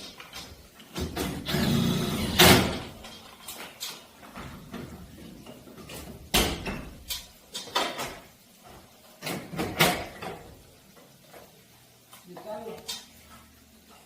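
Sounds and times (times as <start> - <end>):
hard objects knocking and clunking: 2.4 - 10.6.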